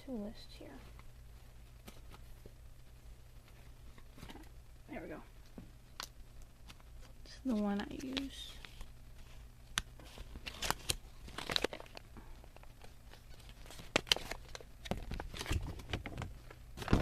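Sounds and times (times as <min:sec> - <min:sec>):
packaging and paper crinkling: 0:06.0 - 0:17.0.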